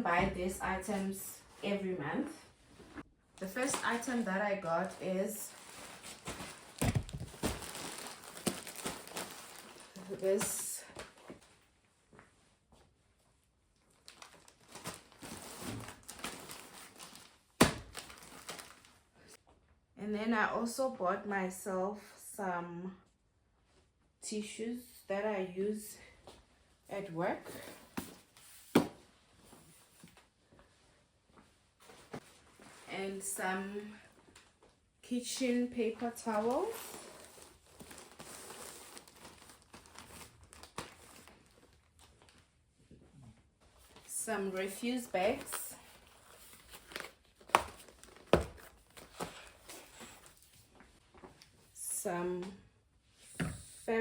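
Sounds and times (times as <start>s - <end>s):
packaging rustling and crinkling: 3.6s - 11.7s, 13.8s - 19.0s, 36.2s - 42.5s, 44.7s - 51.4s.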